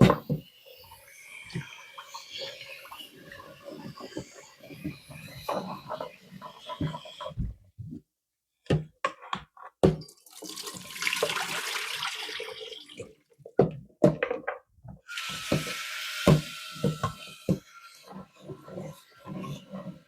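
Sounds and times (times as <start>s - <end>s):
tap water running: 9.8s - 13.7s, 15.1s - 19.6s.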